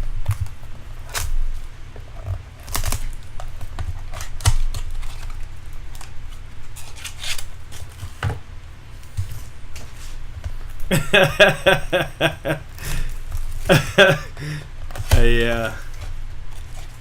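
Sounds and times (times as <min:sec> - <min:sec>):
wrapping tearing and crinkling: 0:00.0 - 0:10.9, 0:14.8 - 0:17.0.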